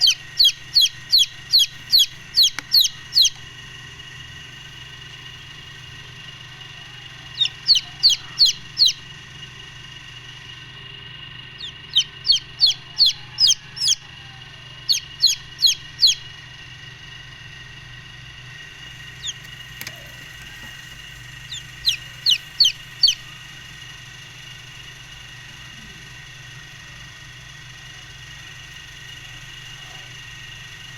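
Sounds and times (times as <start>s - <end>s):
chicks peeping: 0.0s - 9.4s, 11.3s - 16.4s, 18.6s - 23.5s
steady hum: 0.0s - 30.9s.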